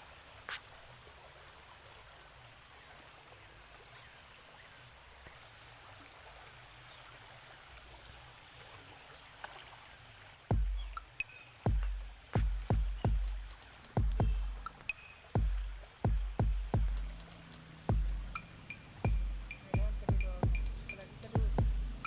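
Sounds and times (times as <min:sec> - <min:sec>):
flowing water: 0:00.0 - 0:22.0
music with heavy drum beat: 0:10.5 - 0:22.0.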